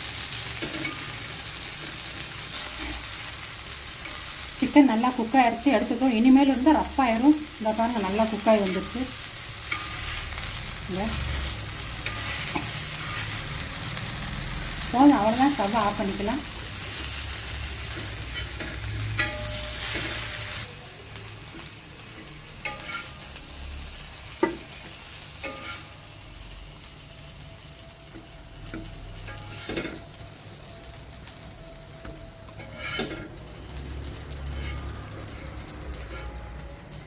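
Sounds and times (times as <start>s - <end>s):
chicken sizzling in oil: 0.0s - 37.0s
spatula scraping a griddle: 0.5s - 4.7s, 8.2s - 10.7s, 11.3s - 15.6s, 16.7s - 20.6s, 21.5s - 23.3s, 24.4s - 26.0s, 28.7s - 30.1s, 32.0s - 36.6s.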